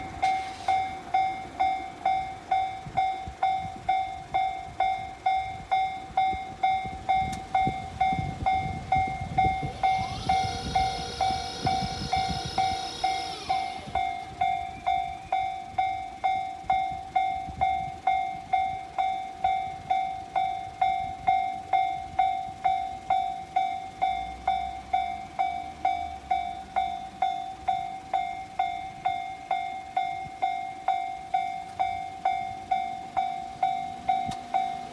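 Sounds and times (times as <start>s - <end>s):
level-crossing warning bell ringing: 0.0s - 34.9s
train passing rumble: 0.0s - 34.9s
brief whining tone: 7.6s - 15.5s.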